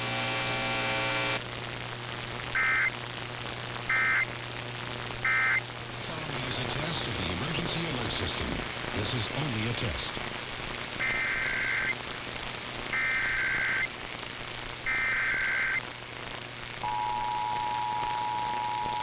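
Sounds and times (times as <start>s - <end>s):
background hiss: 0.0s - 19.0s
digital data bursts: 2.5s - 3.0s, 3.9s - 4.3s, 5.2s - 8.4s, 11.0s - 12.0s, 12.9s - 13.9s, 14.8s - 15.8s
two-tone attention signal: 16.8s - 19.0s.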